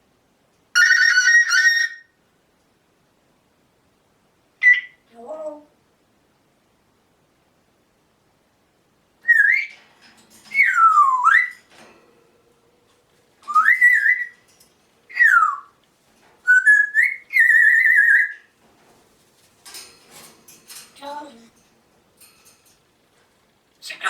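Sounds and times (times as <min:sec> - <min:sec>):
parrot whistling: 0:10.5 - 0:11.6, 0:13.5 - 0:14.4, 0:15.1 - 0:15.8, 0:16.4 - 0:18.5.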